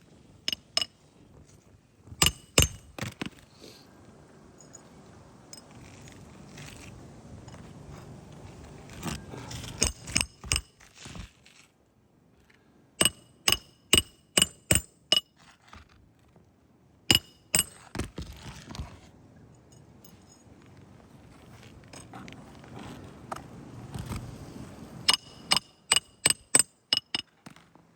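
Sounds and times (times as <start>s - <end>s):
scraping and handling noise: 0.0s - 4.0s, 4.6s - 12.7s, 15.1s - 16.5s, 17.1s - 26.1s
hammer striking metal: 2.2s - 2.9s, 13.0s - 15.3s, 17.1s - 17.8s, 25.1s - 27.2s.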